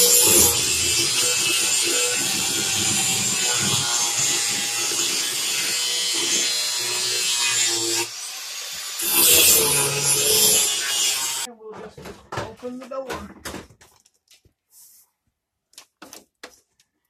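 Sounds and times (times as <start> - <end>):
angle grinder grinding steel: 0.0 - 11.5.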